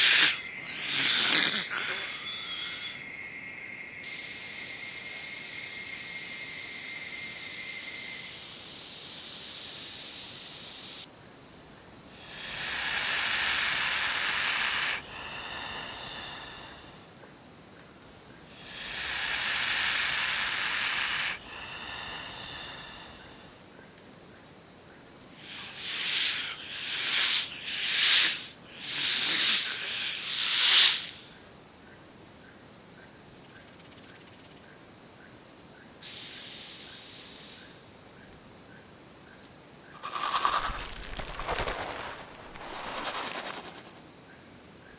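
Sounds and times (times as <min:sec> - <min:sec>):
snake hissing: 0:00.0 - 0:03.0, 0:04.0 - 0:11.1, 0:12.1 - 0:17.1, 0:18.5 - 0:23.7, 0:25.4 - 0:31.2, 0:36.0 - 0:38.4, 0:40.0 - 0:44.1.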